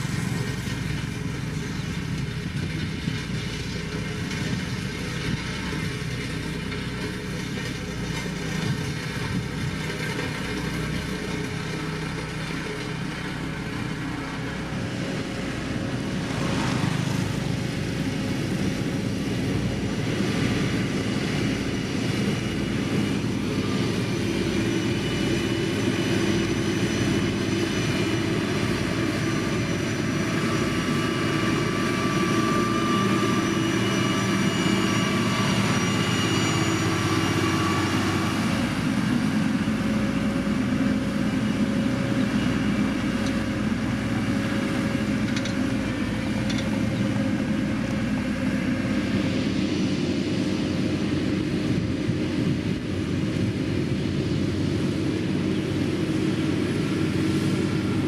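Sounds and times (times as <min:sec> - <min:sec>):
diesel engine running: 0:00.0 - 0:58.0
machine whining tones: 0:21.7 - 0:40.2.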